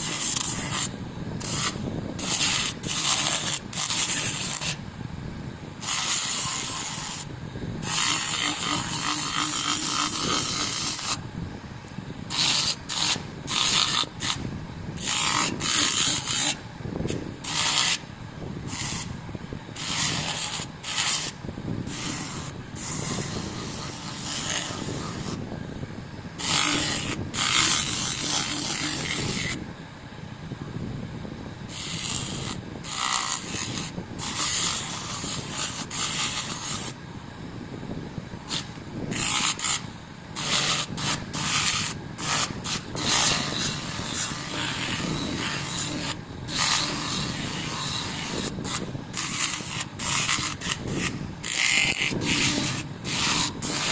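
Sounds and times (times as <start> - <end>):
sandpaper rasping on metal: 0.0 - 4.8, 5.8 - 11.2, 12.3 - 14.4, 15.0 - 16.6, 17.4 - 18.0, 18.7 - 19.2, 19.8 - 25.4, 26.4 - 29.6, 31.7 - 37.0, 38.5 - 53.9.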